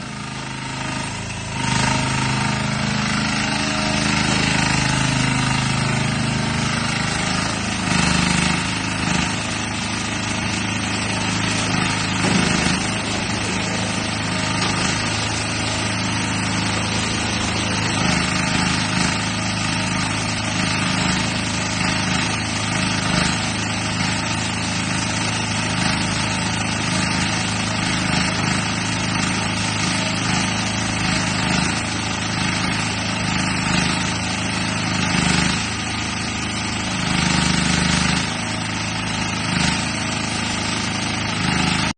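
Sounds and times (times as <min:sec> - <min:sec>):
excavator engine running: 0:00.0 - 0:41.9.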